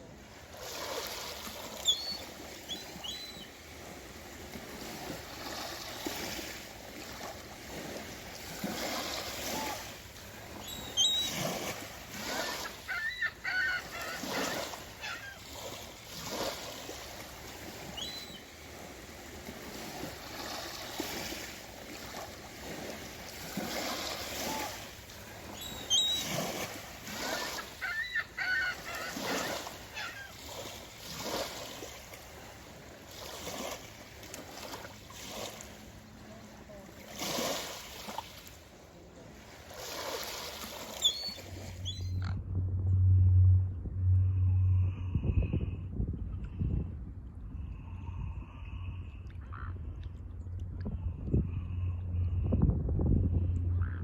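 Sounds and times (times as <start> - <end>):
water noise: 0.0 - 54.0
swans honking: 12.1 - 15.6, 27.0 - 30.4.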